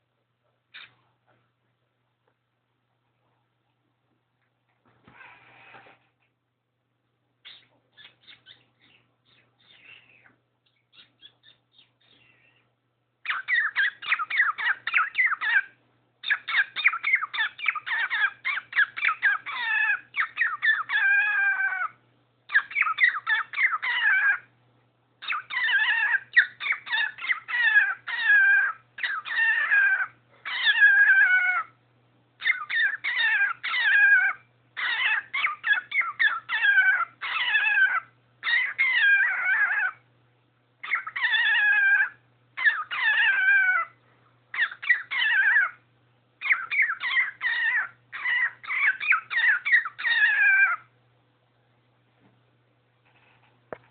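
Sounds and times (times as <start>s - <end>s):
cockatiel calling: 7.4s - 12.4s, 13.2s - 24.5s, 25.2s - 31.8s, 32.4s - 40.0s, 40.8s - 45.8s, 46.4s - 50.9s.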